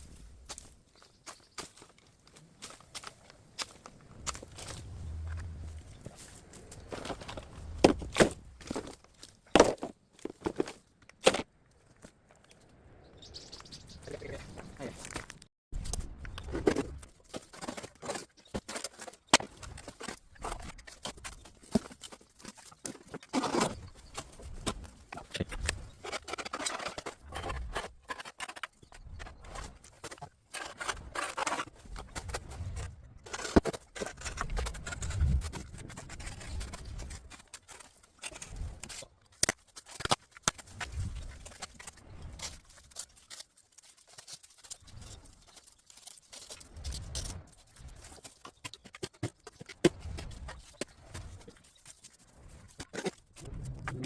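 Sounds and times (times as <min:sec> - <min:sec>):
bamboo leaves rustling: 0:00.0 - 0:09.6, 0:33.9 - 0:54.0.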